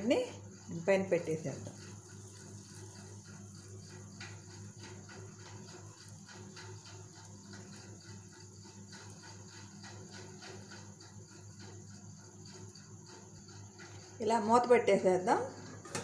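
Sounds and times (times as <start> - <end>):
food sizzling in butter: 1.2 - 9.8.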